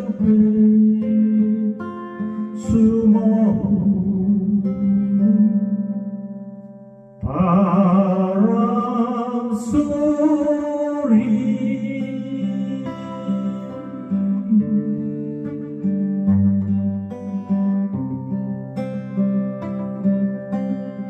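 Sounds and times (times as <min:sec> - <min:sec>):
person singing: 0:00.0 - 0:06.3, 0:07.2 - 0:17.1
acoustic guitar strumming: 0:00.0 - 0:21.0.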